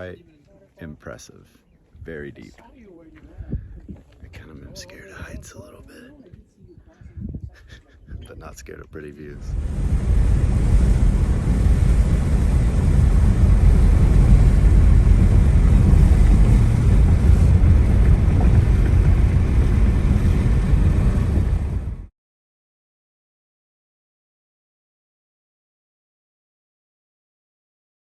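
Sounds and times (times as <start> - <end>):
wind buffeting microphone: 1.9 - 22.1.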